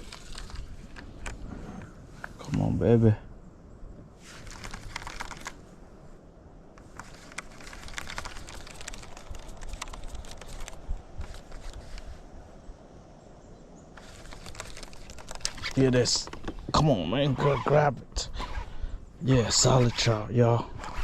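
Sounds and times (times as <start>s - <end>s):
fishing reel clicking: 14.0s - 15.8s.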